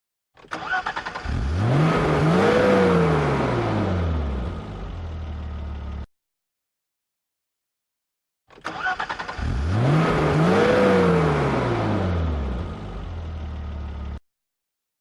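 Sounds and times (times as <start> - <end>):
car starter cranking: 0.4 - 2.3, 8.5 - 10.2
car engine revving and idling: 0.8 - 6.1, 9.2 - 14.2.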